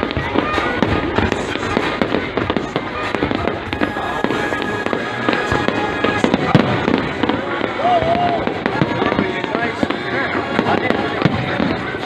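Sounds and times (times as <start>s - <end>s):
fireworks bangs and pops: 0.0s - 12.0s.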